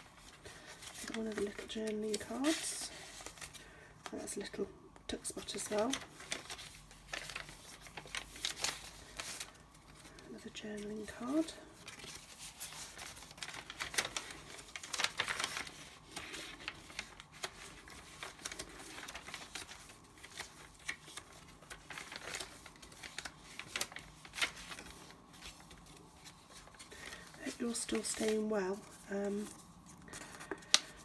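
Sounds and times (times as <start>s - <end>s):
paper pages rustling: 0.0s - 4.5s, 5.2s - 31.0s.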